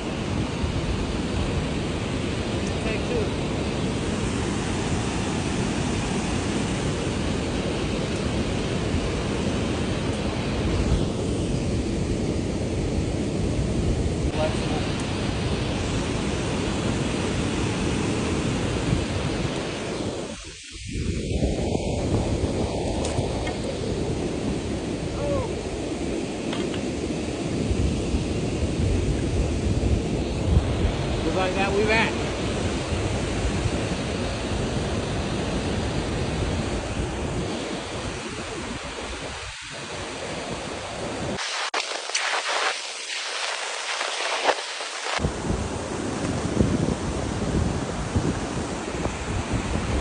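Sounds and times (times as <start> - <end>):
river water: 0.0 - 50.0
wind buffeting microphone: 0.0 - 50.0.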